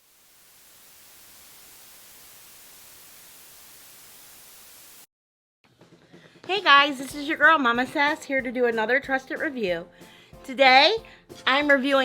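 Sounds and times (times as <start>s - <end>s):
static hiss: 0.0s - 5.1s.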